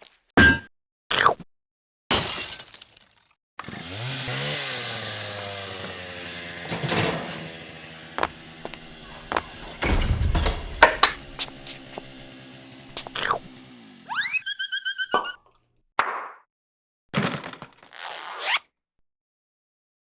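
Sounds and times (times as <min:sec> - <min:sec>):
small motor revving and running: 0:03.6 - 0:14.8
sharp knocks and clanks: 0:08.2 - 0:13.6.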